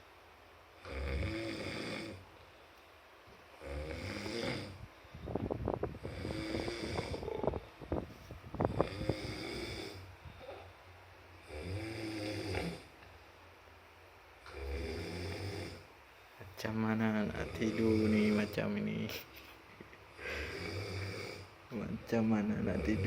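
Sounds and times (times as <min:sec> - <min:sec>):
person snoring heavily: 0:00.8 - 0:02.2, 0:03.6 - 0:04.8, 0:06.0 - 0:07.7, 0:08.6 - 0:10.6, 0:11.4 - 0:12.9, 0:14.4 - 0:15.9, 0:17.2 - 0:19.1, 0:20.1 - 0:21.5, 0:22.5 - 0:23.0.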